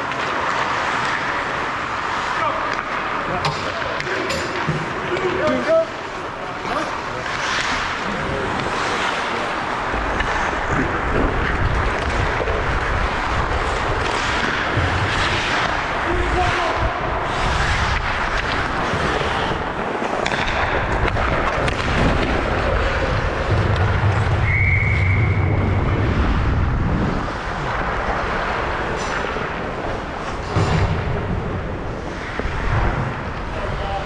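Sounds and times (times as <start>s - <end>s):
hockey sticks and puck banging: 0.0s - 24.5s, 27.6s - 33.6s
echoing rink noise: 0.0s - 34.0s
high whistle-like tone: 24.4s - 25.8s.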